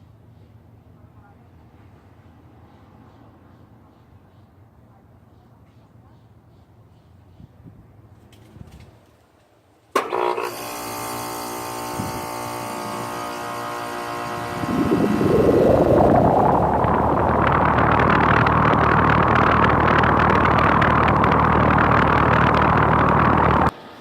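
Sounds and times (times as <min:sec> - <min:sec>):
air conditioner hum: 0:09.7 - 0:24.0
condenser fan rushing air: 0:10.0 - 0:24.0.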